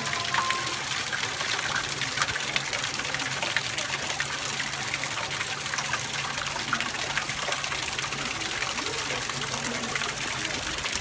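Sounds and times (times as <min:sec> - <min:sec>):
water splashing in pool: 0:00.0 - 0:11.0.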